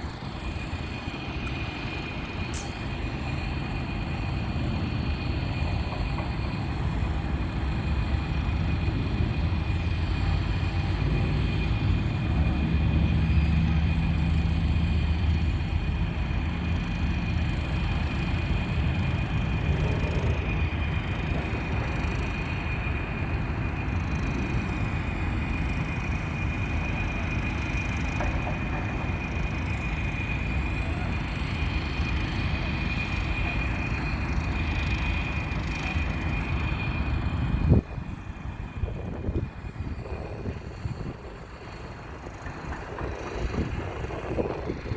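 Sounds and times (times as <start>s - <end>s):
moving vehicle rumble: 0.0s - 44.9s.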